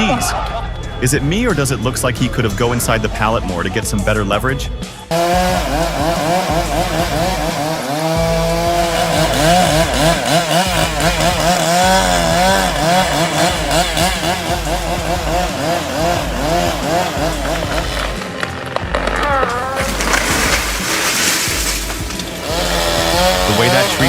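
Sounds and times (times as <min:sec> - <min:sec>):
chainsaw cutting into tree: 0:05.1 - 0:24.0.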